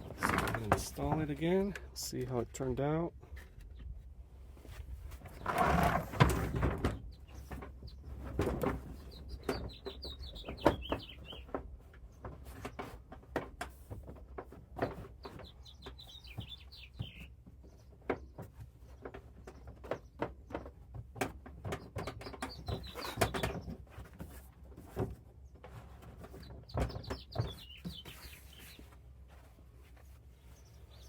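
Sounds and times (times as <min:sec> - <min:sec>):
rubber mat rustling: 0:00.0 - 0:01.6, 0:04.5 - 0:06.8
bird chirping: 0:08.9 - 0:11.6, 0:15.2 - 0:20.7, 0:21.7 - 0:23.8, 0:26.3 - 0:29.0, 0:30.4 - 0:31.0.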